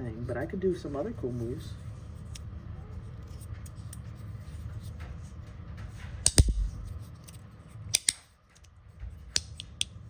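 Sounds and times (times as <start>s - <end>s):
low thud: 6.4s - 6.9s.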